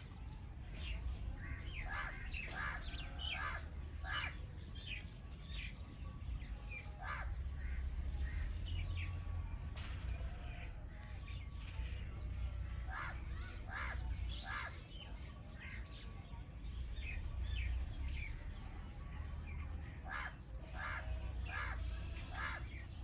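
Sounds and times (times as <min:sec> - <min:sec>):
birds chirping and calling: 0:00.0 - 0:23.0
steady low rumble: 0:07.2 - 0:14.5.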